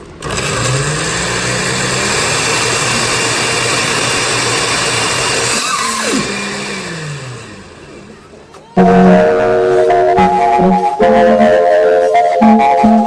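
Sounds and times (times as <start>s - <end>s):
blender running: 0.1s - 7.6s.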